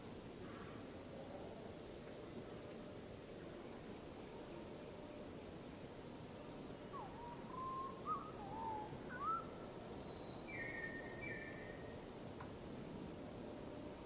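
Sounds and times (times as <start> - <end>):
bird whistled calls: 7.0 - 11.9.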